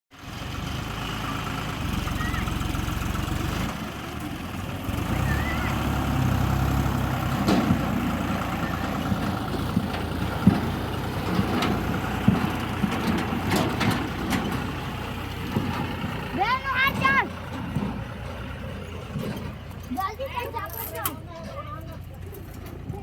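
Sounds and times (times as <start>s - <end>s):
diesel engine running: 0.1s - 23.0s
sharp knocks and clanks: 7.2s - 22.0s.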